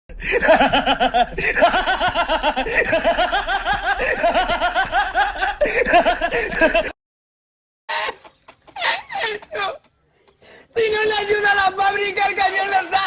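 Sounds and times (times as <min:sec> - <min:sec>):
person laughing rapidly: 0:00.2 - 0:06.9, 0:07.9 - 0:09.8.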